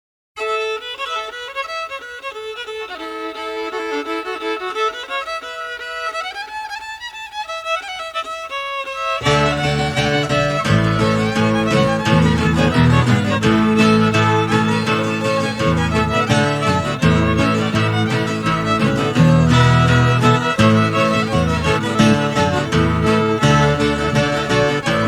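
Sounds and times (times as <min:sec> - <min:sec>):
fiddle melody: 0:00.4 - 0:25.0
folk-rock band playing: 0:09.2 - 0:25.0.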